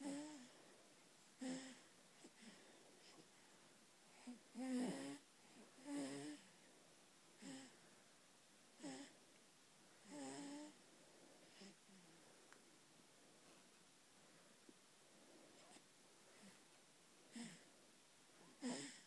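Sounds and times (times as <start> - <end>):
wheezy squeaky snoring: 4.6 - 5.2.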